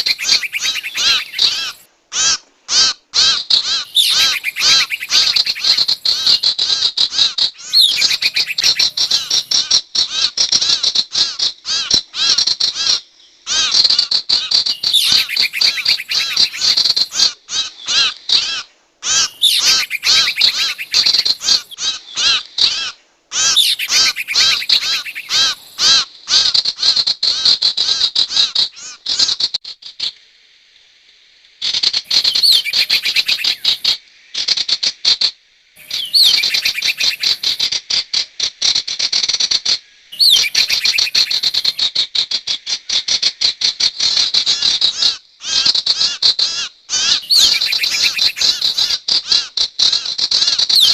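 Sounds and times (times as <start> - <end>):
bird sharp high chirps: 0.0 - 1.8, 3.8 - 6.5, 7.6 - 9.6, 14.7 - 17.2, 19.1 - 21.8, 23.4 - 25.8, 32.1 - 34.0, 35.8 - 37.6, 40.2 - 41.8, 47.2 - 49.0.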